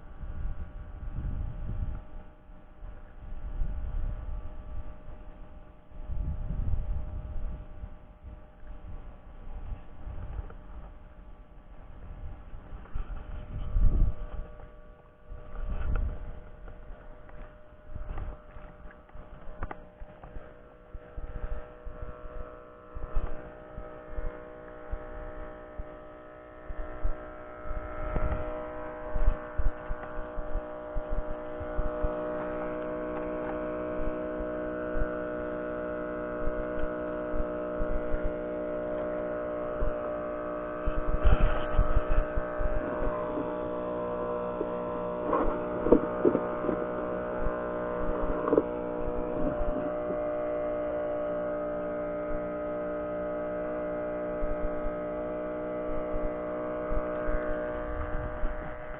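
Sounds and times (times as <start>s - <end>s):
small engine running: 0.0s - 58.9s.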